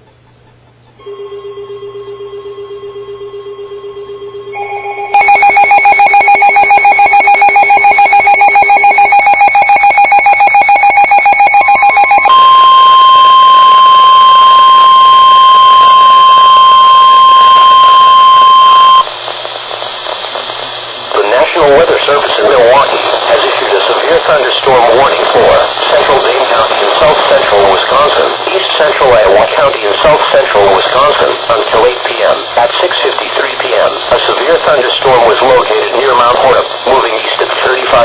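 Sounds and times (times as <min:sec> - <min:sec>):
pulsing electronic alarm tone: 0:01.0 - 0:19.0
steady long warning tone: 0:01.0 - 0:20.4, 0:21.1 - 0:38.0.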